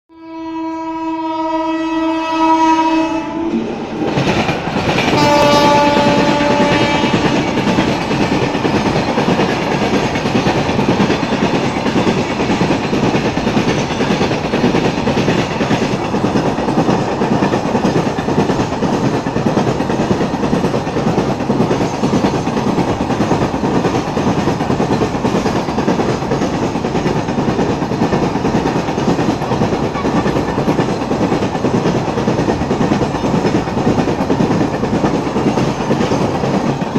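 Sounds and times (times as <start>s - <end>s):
locomotive horn blasts: 0.1s - 3.6s, 5.2s - 7.7s
train wagons clattering on rails: 3.5s - 36.9s.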